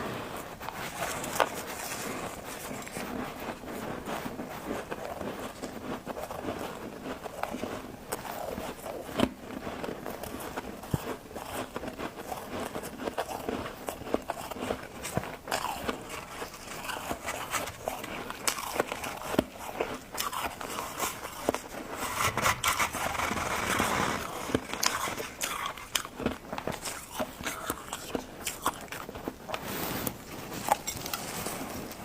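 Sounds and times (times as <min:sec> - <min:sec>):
ice crunching when chewed: 0:00.0 - 0:32.0.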